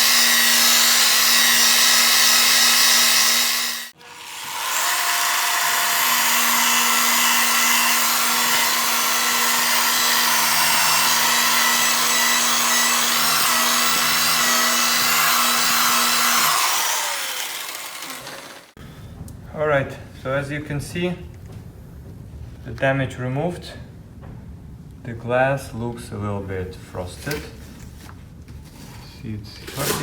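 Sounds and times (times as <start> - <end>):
electric polisher on glass: 0.0 - 18.8.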